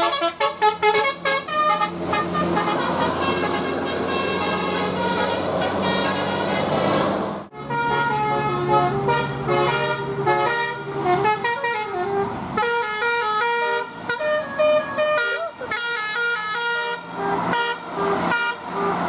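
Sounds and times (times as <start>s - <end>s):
bus engine running: 0.0s - 19.0s
multi-tone bus horn tune: 0.0s - 19.0s.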